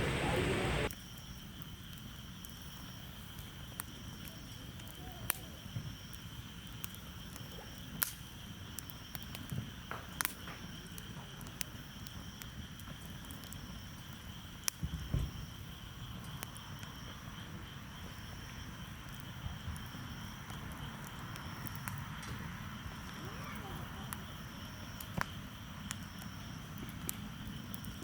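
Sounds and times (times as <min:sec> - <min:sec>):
low background rumble: 0:00.0 - 0:00.9
crickets chirring: 0:00.0 - 0:28.0.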